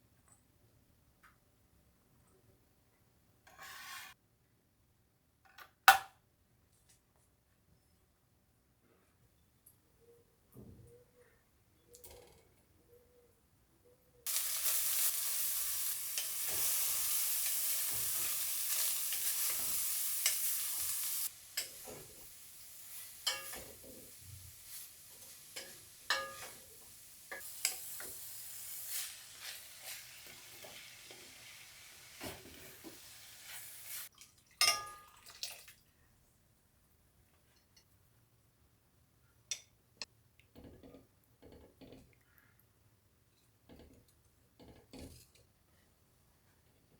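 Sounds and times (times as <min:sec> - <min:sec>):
food sizzling in a pan: 0:14.3 - 0:34.1
spatula stirring pan: 0:14.3 - 0:34.8.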